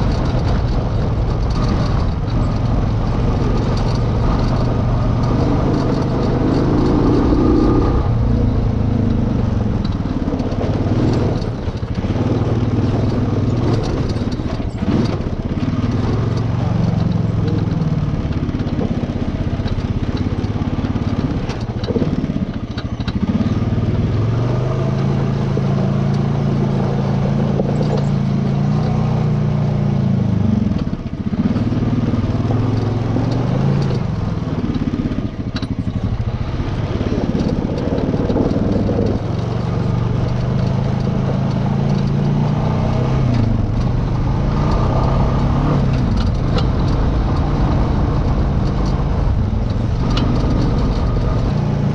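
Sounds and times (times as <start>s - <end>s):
atv engine revving: 0.0s - 51.9s
knocks and clatter on rocks: 9.8s - 29.4s, 30.8s - 51.9s.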